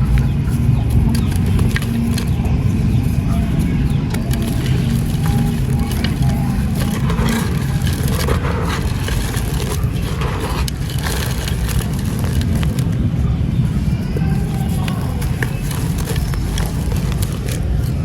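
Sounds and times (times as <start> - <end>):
dry chunks crushed and crunching: 0.0 - 18.0
steady low rumble: 0.0 - 18.0.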